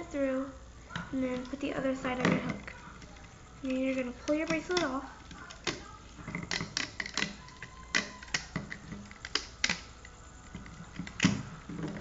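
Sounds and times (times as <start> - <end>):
rubber bands snapping off pegs: 4.2 - 12.0.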